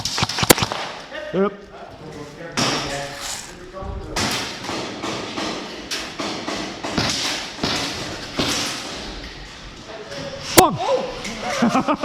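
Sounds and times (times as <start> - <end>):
irregular thumps and scuffing: 2.0 - 4.1.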